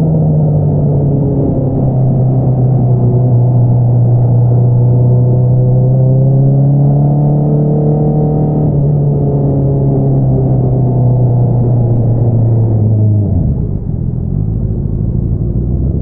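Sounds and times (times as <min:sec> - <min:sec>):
motorcycle engine running: 0:08.2 - 0:16.0.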